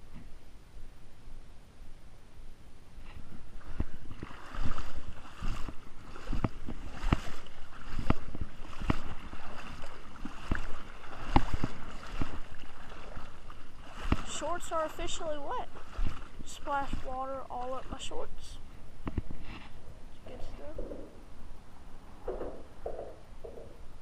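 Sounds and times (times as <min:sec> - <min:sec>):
footsteps wading through water: 0:03.0 - 0:19.9, 0:22.2 - 0:24.0.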